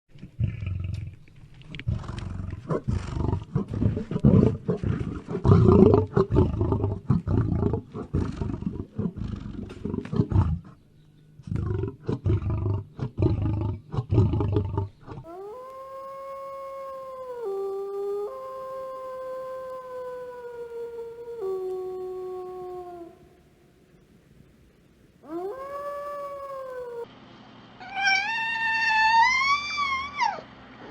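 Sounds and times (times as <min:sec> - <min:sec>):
large predator roaring and growling: 0:01.9 - 0:10.7, 0:11.5 - 0:15.3
wolf howling: 0:15.1 - 0:23.5, 0:25.2 - 0:27.1, 0:27.8 - 0:30.5.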